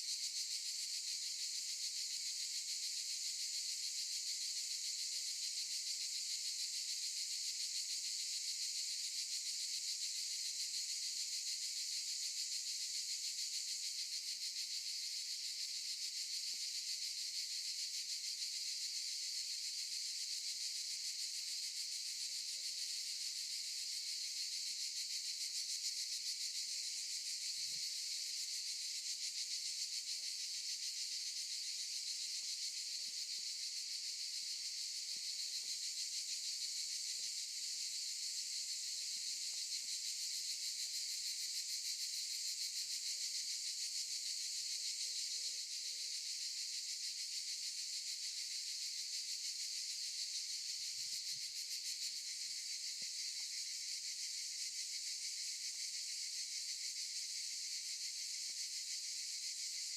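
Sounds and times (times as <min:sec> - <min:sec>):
cicadas buzzing: 0:23.5 - 0:42.7, 0:47.3 - 0:59.9.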